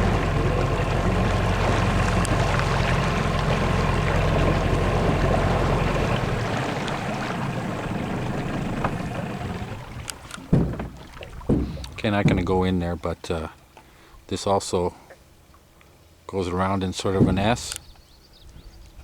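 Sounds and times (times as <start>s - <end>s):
outboard motor drone: 0.0s - 12.5s
water rushing: 0.0s - 14.1s, 16.6s - 17.8s
wind: 0.0s - 19.0s.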